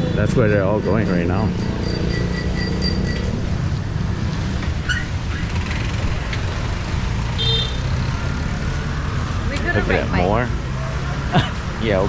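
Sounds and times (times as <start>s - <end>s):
rumble of passing vehicles: 0.0s - 12.0s
brief high beep: 1.6s - 3.3s.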